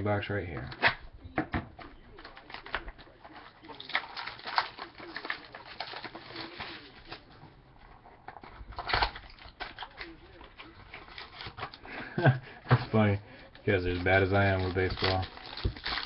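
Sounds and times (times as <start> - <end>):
cardboard rustling and clicking: 12.7 - 16.0.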